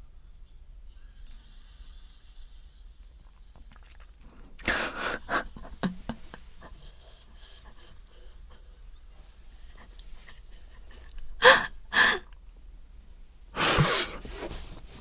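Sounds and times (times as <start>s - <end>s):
sharp breath out: 13.6s - 14.3s.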